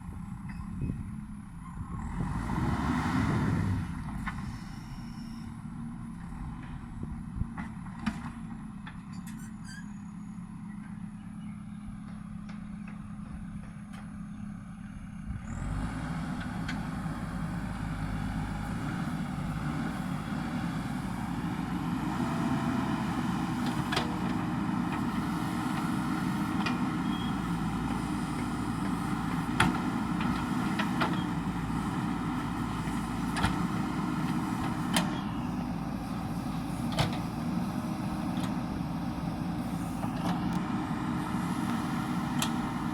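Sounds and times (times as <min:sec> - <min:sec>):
diesel engine revving: 0:01.7 - 0:07.5, 0:15.2 - 0:42.9.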